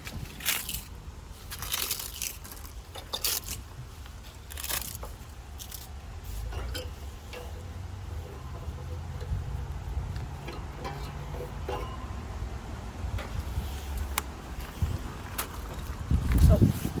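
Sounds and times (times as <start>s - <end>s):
crunching footsteps: 0.0s - 6.0s, 13.3s - 17.0s.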